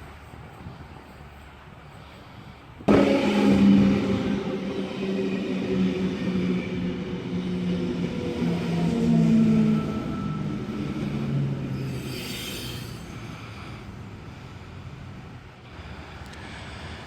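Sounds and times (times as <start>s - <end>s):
vehicle passing by: 2.9s - 13.6s.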